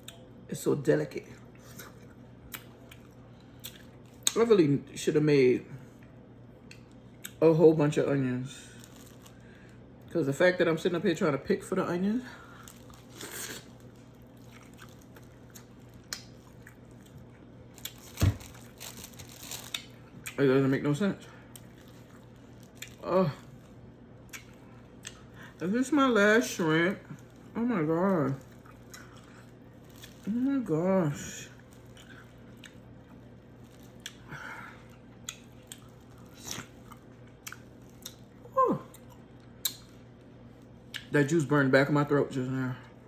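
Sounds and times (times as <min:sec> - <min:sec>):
soft chewing: 0:01.2 - 0:04.4, 0:05.8 - 0:07.4, 0:08.6 - 0:10.1, 0:12.3 - 0:20.4, 0:21.2 - 0:25.7, 0:26.4 - 0:30.5, 0:31.4 - 0:41.1.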